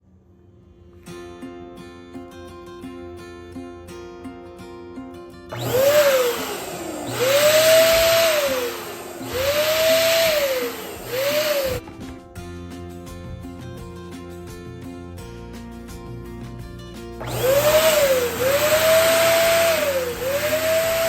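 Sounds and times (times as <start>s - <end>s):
balloon inflator motor whine: 5.5s - 11.8s, 17.2s - 21.0s
background music: 11.7s - 21.0s.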